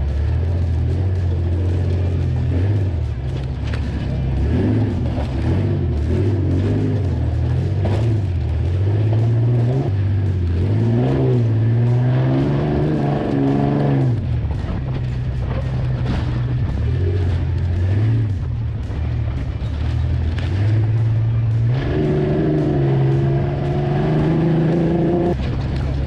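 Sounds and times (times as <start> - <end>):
off-road vehicle engine revving: 0.0 - 26.0.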